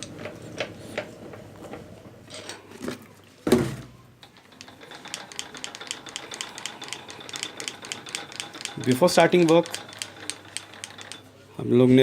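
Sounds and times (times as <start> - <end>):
rapid mechanical ticking: 4.2 - 11.3.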